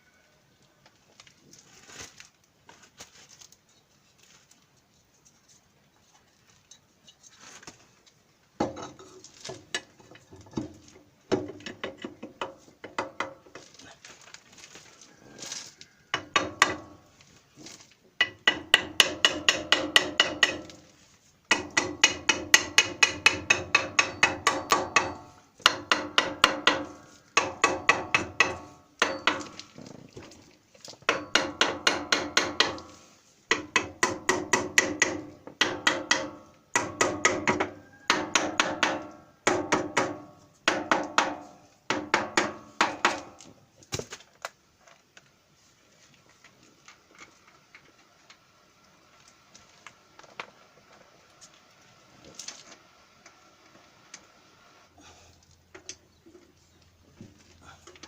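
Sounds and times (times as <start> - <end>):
hammer striking metal: 18.2 - 20.8, 21.5 - 29.6, 31.1 - 32.9, 33.5 - 43.4.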